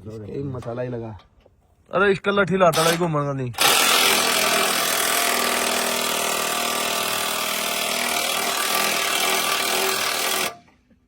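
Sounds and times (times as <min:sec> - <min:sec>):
power tool whirring: 0:03.6 - 0:10.8.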